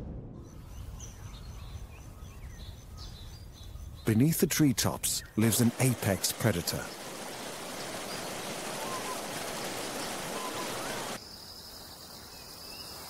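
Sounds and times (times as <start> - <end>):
steady rushing hiss: 5.4 - 11.2.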